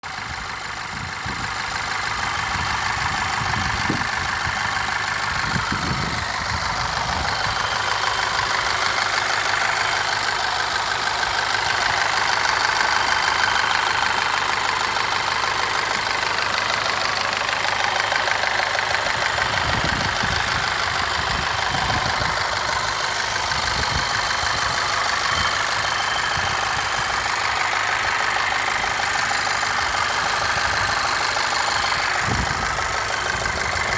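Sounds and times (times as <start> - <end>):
car engine idling with knock: 0.0 - 33.9.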